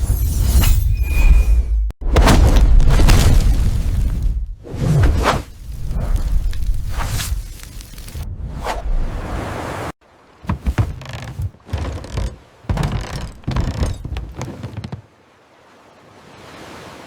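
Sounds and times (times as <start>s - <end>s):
thuds and knocks: 10.4s - 15.1s.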